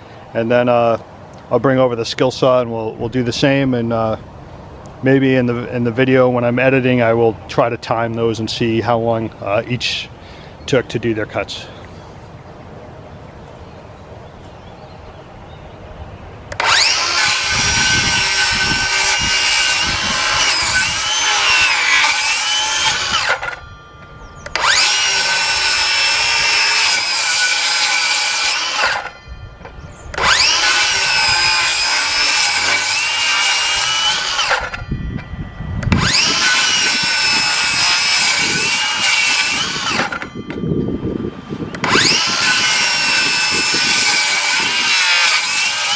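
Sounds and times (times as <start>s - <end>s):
circular saw cutting wood: 16.5s - 40.6s, 41.6s - 45.9s.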